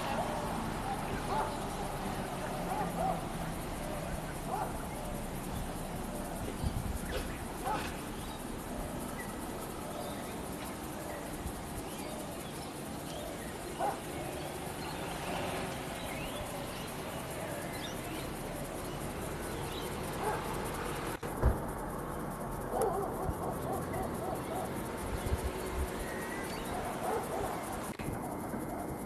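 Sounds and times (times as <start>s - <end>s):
bird chirps: 0.0s - 20.7s
outdoor background noise: 0.0s - 29.0s.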